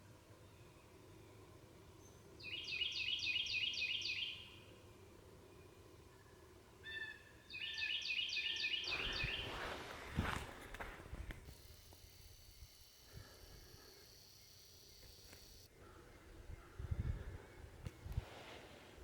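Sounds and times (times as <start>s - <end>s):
songbird singing high notes: 2.4s - 4.6s, 6.8s - 9.6s
rustle: 8.8s - 15.7s, 17.8s - 19.0s.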